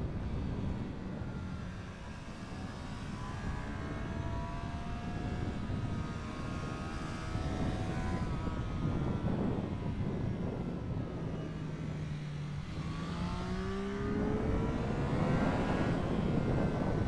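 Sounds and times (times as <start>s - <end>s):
low rumble of wind noise: 0.0s - 17.0s
motorcycle engine accelerating: 12.7s - 17.0s.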